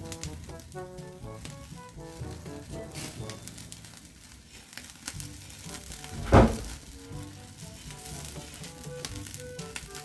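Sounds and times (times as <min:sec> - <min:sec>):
background music: 0:00.0 - 0:10.0
meat sizzling over fire: 0:00.0 - 0:10.0
loud thunk: 0:06.2 - 0:06.8.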